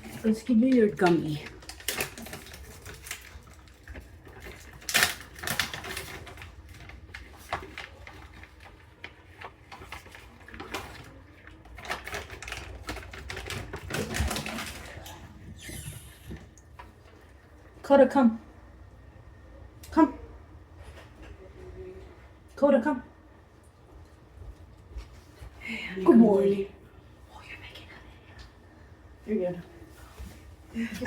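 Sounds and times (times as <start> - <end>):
puppy crunching food: 0.0 - 17.8.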